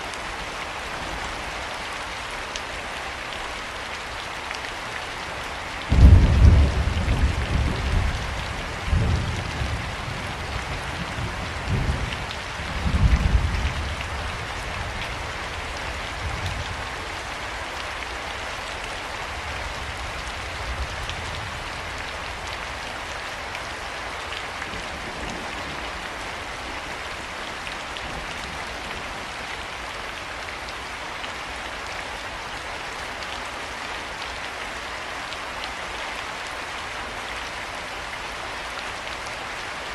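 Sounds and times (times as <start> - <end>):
steady rain: 0.0 - 39.9
thunder cracking and rumbling: 5.9 - 10.4.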